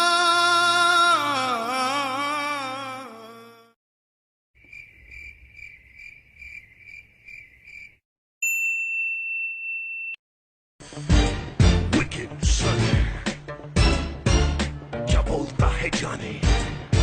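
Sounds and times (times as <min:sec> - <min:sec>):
cricket chirping: 0:04.6 - 0:08.0.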